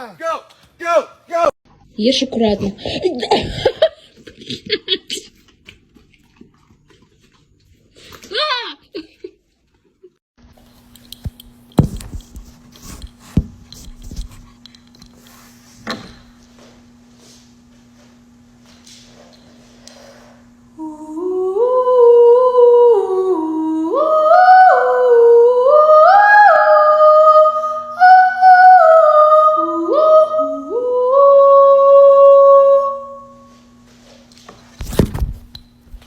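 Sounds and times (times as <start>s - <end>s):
person humming a melody: 20.8s - 33.3s.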